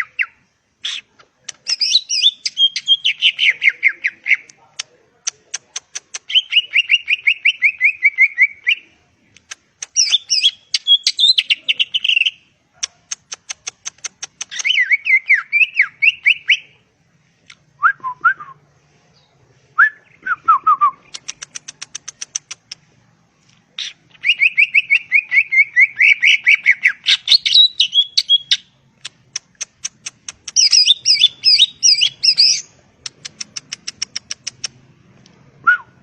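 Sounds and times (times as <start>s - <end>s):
bird singing trills: 1.6s - 4.4s, 10.0s - 12.4s, 23.8s - 28.7s, 30.6s - 32.7s
bird sharp high ticks: 9.3s - 10.5s, 12.8s - 14.8s, 21.0s - 22.8s, 28.5s - 34.8s.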